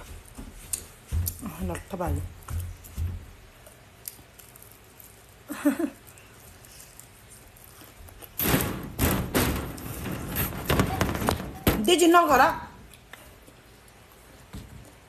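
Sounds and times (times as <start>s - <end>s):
close-miked eating crunches: 2.6s - 8.4s.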